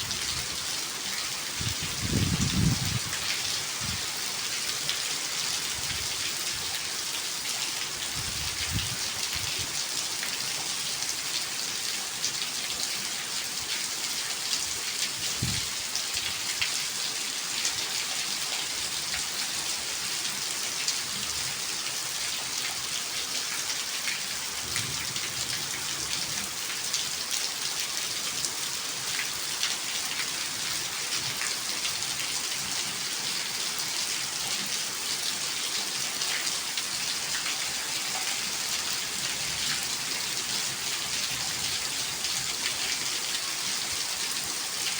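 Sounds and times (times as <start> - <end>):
rain spattering on hard surfaces: 0.0 - 44.9.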